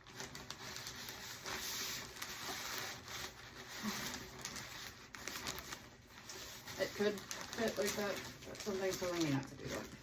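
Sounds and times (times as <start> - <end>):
packaging rustling and crinkling: 0.0 - 10.0.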